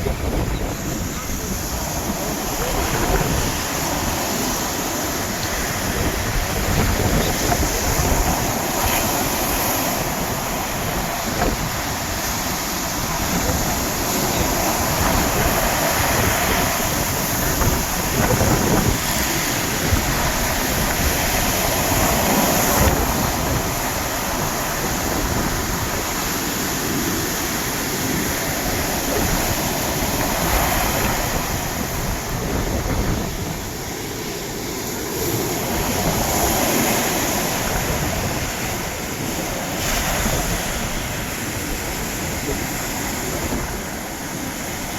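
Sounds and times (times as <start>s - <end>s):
sea waves breaking on shore: 0.0s - 44.9s.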